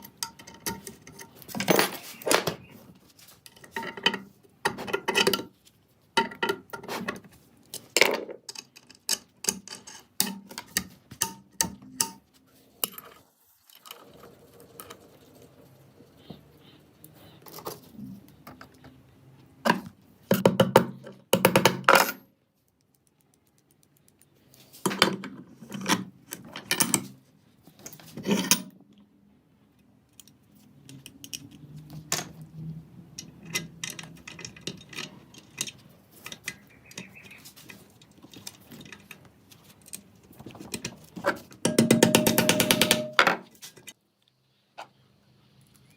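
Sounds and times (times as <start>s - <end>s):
metal parts and tools clinking: 0.0s - 2.8s, 7.7s - 15.2s, 27.8s - 28.8s, 33.1s - 44.0s.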